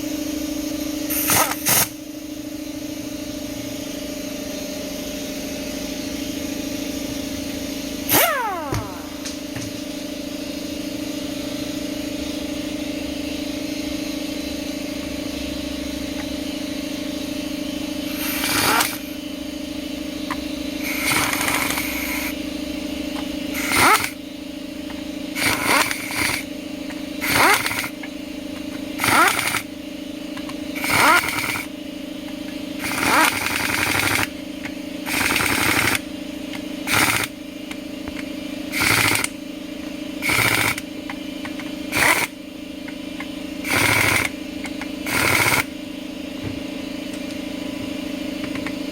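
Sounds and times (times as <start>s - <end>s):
steady hum: 6.2s - 11.6s
power driver whining: 8.1s - 9.8s, 18.1s - 19.1s, 20.3s - 22.4s, 23.1s - 24.2s, 24.9s - 29.8s, 30.4s - 31.7s, 32.3s - 45.8s.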